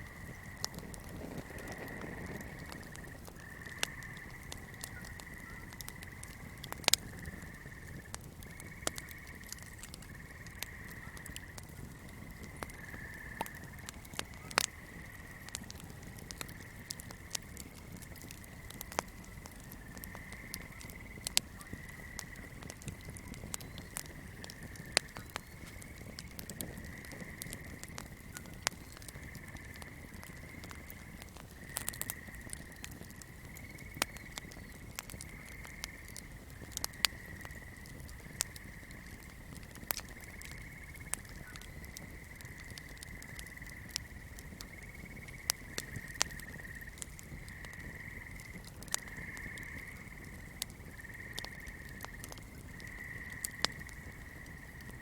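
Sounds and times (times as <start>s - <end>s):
swamp chorus trilling: 0.0s - 17.6s
candle crackling and popping: 0.0s - 55.0s.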